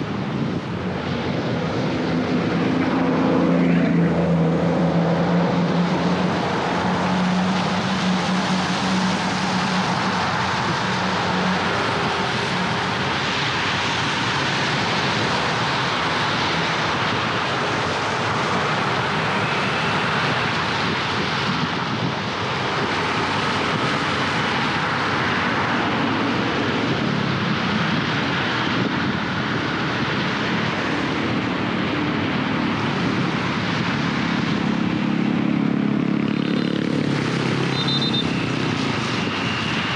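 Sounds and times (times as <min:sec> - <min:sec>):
low engine drone: 0:00.0 - 0:21.5.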